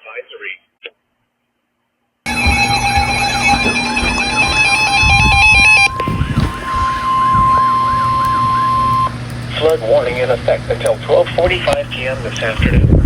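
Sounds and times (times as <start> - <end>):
high electronic beeping: 2.3 - 9.2
steady alert tone: 2.3 - 9.2
wailing siren tone: 2.3 - 9.2.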